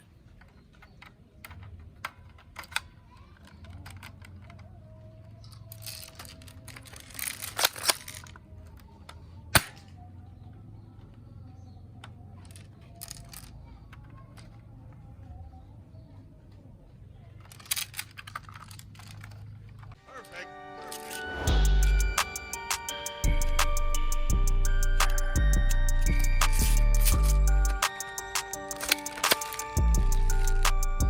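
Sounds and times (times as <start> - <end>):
toy gun plastic clicks and rattling: 0.0 - 10.0, 12.0 - 14.6, 17.4 - 20.0, 26.4 - 31.0
sharp plastic snaps: 5.4 - 10.0.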